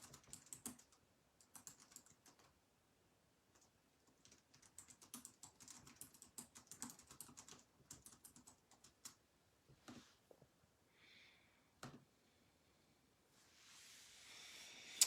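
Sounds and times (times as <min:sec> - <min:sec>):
faint keyboard typing: 0:00.0 - 0:02.6, 0:03.5 - 0:09.2.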